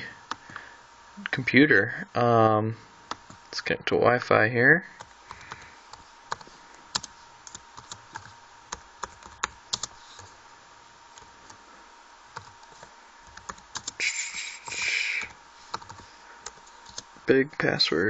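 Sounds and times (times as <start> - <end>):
laptop keyboard typing: 5.0 - 10.3, 12.4 - 14.0, 14.6 - 17.1.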